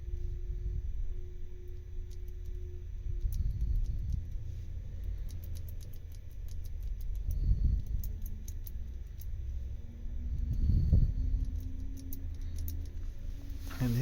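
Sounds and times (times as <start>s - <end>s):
rumble of lock being handled: 0.0s - 14.0s
padlock wheels clicking: 5.0s - 9.5s, 11.3s - 13.1s.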